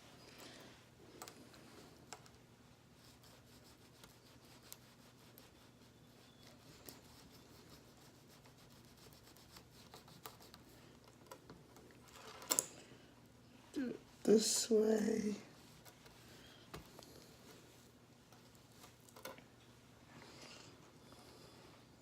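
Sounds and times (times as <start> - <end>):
cloth rubbing metal watch band: 3.0 - 10.8.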